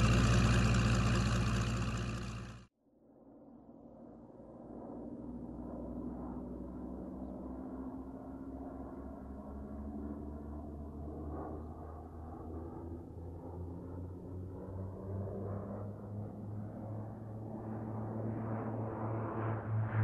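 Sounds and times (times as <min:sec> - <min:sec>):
low throbbing mechanical drone: 0:00.0 - 0:02.6, 0:10.6 - 0:20.0.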